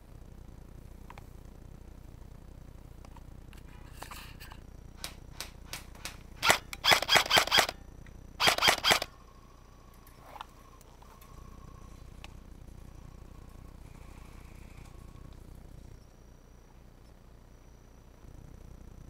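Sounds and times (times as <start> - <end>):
airsoft gun shots: 5.0 - 7.8, 8.4 - 9.1.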